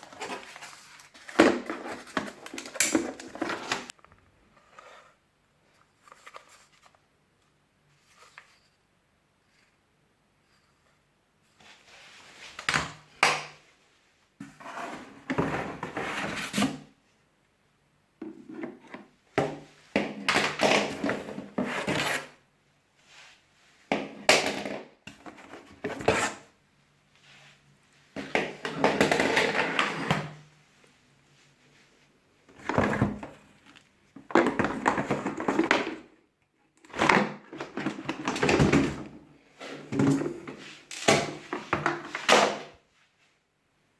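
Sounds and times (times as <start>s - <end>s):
rustling of packaging: 0.0s - 5.0s.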